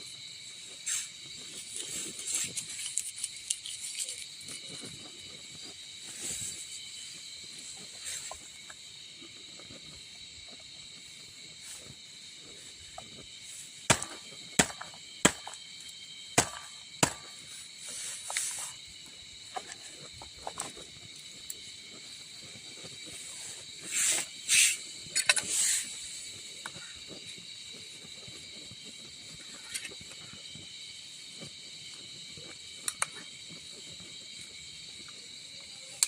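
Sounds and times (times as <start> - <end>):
forest insects trilling: 0.0 - 36.0
hissy rustling bursts: 0.5 - 3.0, 22.4 - 26.3.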